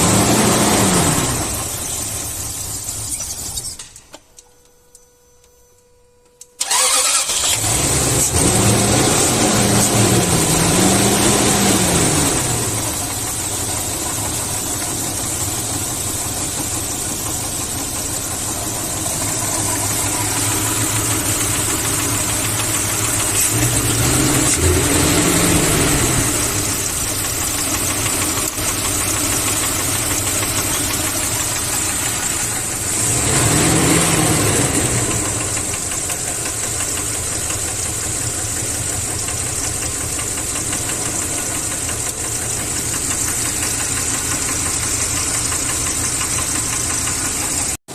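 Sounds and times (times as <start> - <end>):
car engine revving: 0.0 - 2.6, 6.6 - 47.8
car engine idling with knock: 11.8 - 47.9.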